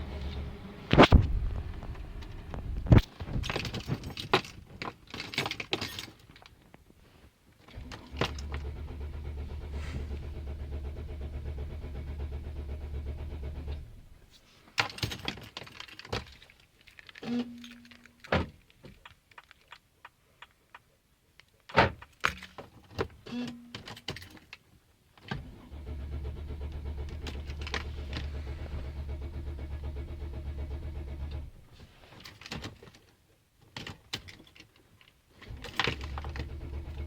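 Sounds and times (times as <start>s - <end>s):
diesel engine cranking: 0.0s - 3.9s, 7.7s - 14.3s, 25.3s - 31.8s, 35.4s - 37.0s.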